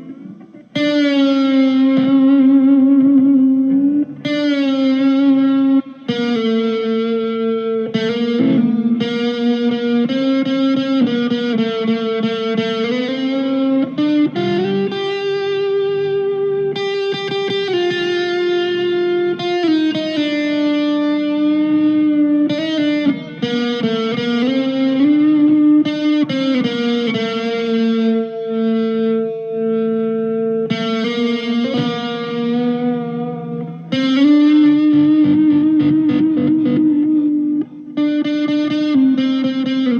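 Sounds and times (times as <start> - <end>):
electric guitar chords: 0.0 - 39.9.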